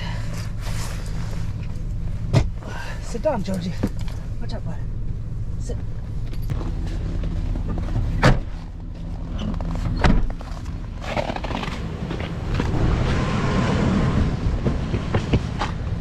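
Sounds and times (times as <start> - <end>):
van engine humming: 0.0 - 16.0.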